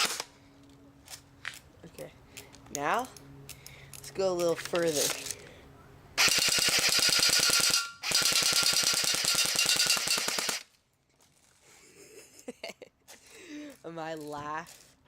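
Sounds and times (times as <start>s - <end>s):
airsoft rifle firing full-auto: 0.0s - 0.3s, 6.2s - 10.7s.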